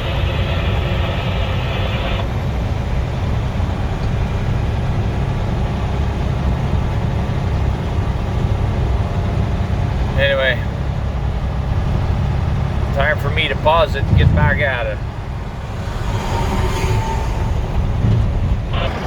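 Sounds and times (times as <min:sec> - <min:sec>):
truck diesel engine rumble: 0:00.0 - 0:19.0
higher-pitched whine: 0:15.0 - 0:19.0.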